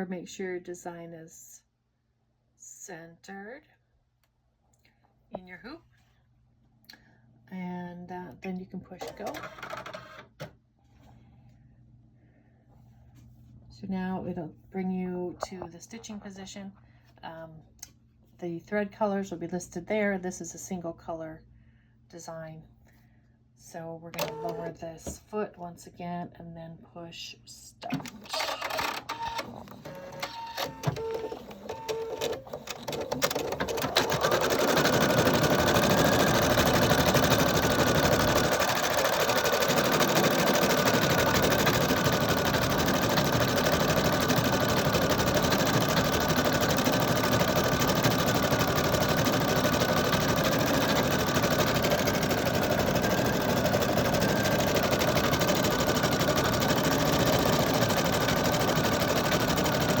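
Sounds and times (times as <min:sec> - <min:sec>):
sewing machine needle stitching: 0:09.0 - 0:10.2, 0:24.2 - 0:24.8, 0:27.9 - 1:00.0
sewing machine clicks: 0:24.2 - 0:24.7, 0:30.6 - 1:00.0.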